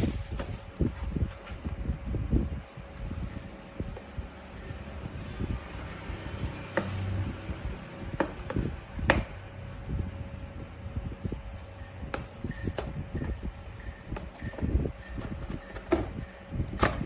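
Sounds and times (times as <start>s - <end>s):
low rumbling: 0.0s - 17.0s.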